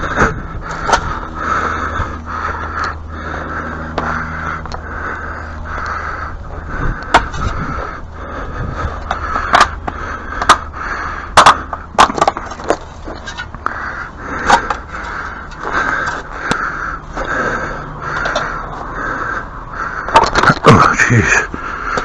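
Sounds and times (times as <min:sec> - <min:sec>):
brick chunks knocking and clinking: 0:11.4 - 0:13.4, 0:20.1 - 0:20.7.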